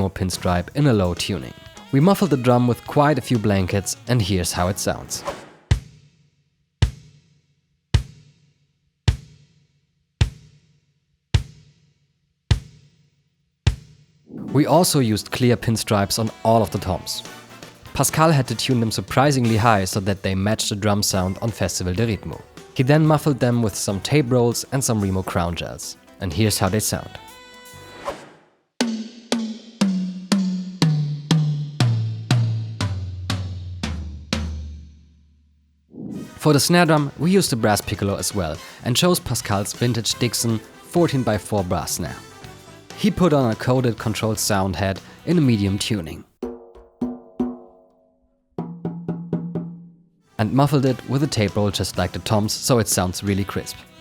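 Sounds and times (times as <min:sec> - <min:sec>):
tom drums struck: 0:05.3 - 0:06.0, 0:29.4 - 0:34.9, 0:46.4 - 0:47.9
muffled kick drum hits: 0:05.7 - 0:06.0, 0:06.8 - 0:07.1, 0:08.0 - 0:08.2, 0:10.2 - 0:10.5, 0:11.4 - 0:11.7, 0:12.5 - 0:12.8, 0:13.7 - 0:14.5, 0:46.4 - 0:47.8.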